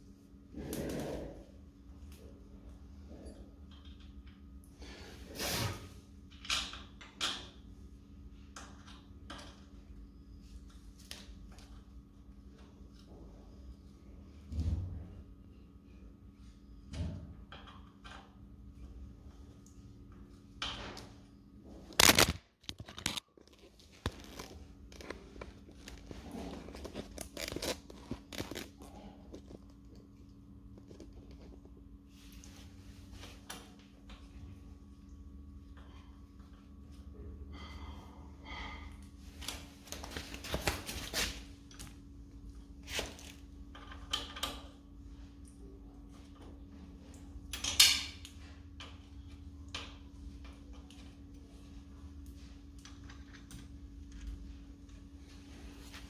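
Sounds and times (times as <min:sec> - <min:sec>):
sliding scrape of bicycle parts: 0:05.0 - 0:06.0.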